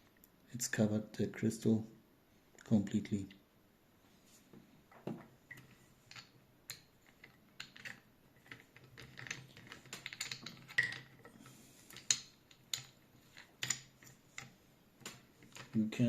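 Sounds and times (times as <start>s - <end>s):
small hard parts clicking and tapping: 4.9s - 16.0s.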